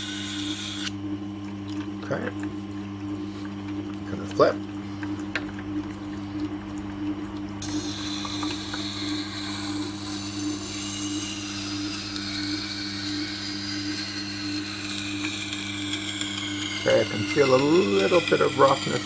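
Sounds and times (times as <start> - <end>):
grinder motor humming: 0.0 - 19.0
knife grinding on stone: 7.6 - 19.0.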